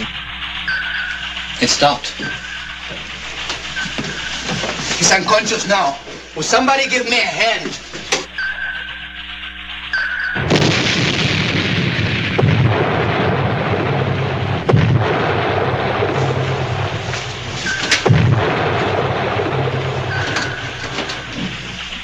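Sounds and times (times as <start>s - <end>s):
depth charges exploding: 0.0s - 6.1s, 8.7s - 22.0s
sonar pings: 0.6s - 1.4s, 2.1s - 2.8s, 8.3s - 9.3s, 9.9s - 10.6s, 20.0s - 21.4s
sharp cracks: 6.9s - 22.0s.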